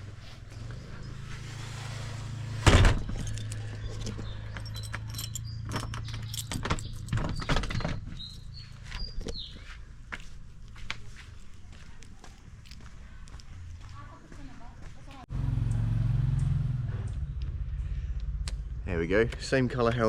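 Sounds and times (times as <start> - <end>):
door banging shut: 2.6 - 3.3
keys jangling: 3.0 - 8.4.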